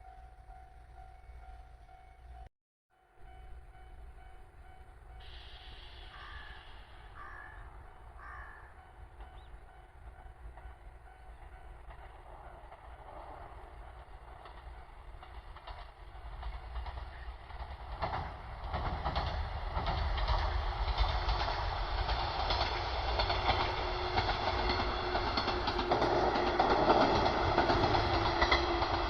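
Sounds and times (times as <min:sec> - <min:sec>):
train rumble: 0:00.0 - 0:29.0
train wheels clicking over joints: 0:08.0 - 0:29.0.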